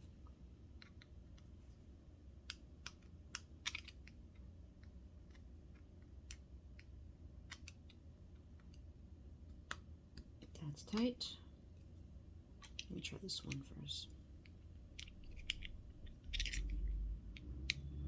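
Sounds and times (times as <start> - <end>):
low steady hum: 0.0 - 18.0.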